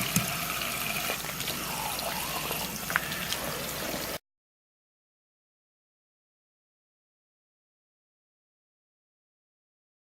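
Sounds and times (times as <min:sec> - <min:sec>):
tap water running into sink: 0:00.0 - 0:04.2.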